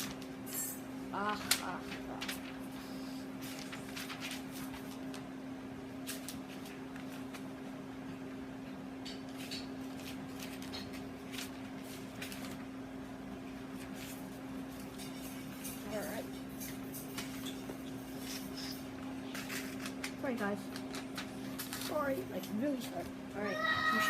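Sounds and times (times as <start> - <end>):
paper rustling: 1.3 - 5.3, 9.9 - 12.7.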